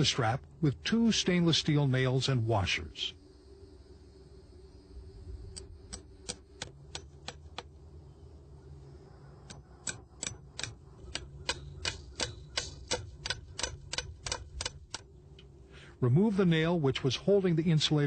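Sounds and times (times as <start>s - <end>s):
hammer striking nails: 9.8s - 15.0s.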